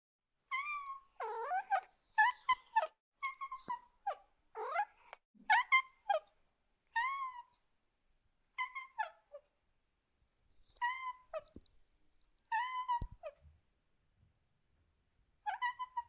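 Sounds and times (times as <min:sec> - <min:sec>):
kitten meowing: 0:12.5 - 0:13.4.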